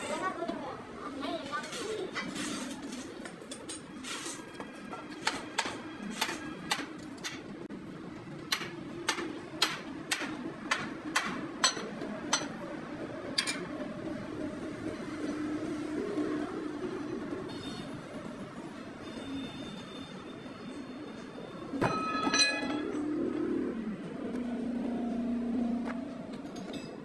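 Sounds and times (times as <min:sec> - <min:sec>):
steady low hum: 0:21.4 - 0:27.0.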